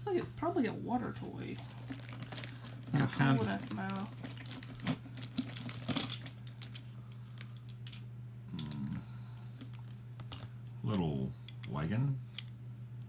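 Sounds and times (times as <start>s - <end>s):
steady low hum: 0.0s - 13.0s
plastic toys rustling and clicking: 1.5s - 8.0s.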